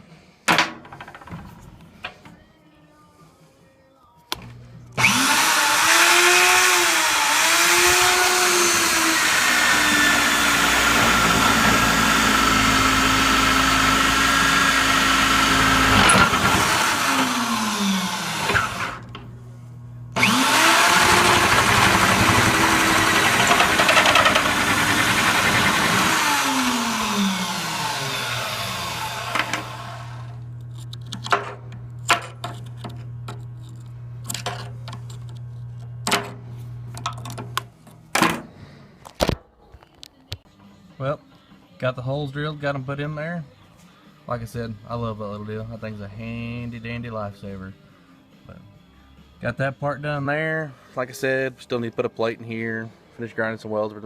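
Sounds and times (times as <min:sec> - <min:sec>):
electric drill boring through steel: 0:05.0 - 0:19.2, 0:20.2 - 0:30.4.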